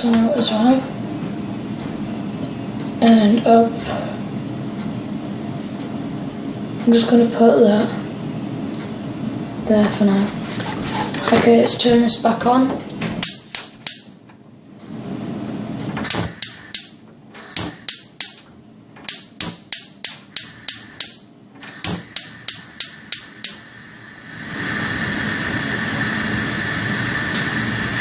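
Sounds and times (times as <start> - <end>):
gas flame hissing: 13.1 - 14.2, 14.8 - 28.0
gas igniter clicking: 13.2 - 14.1, 16.0 - 18.4, 19.1 - 25.4.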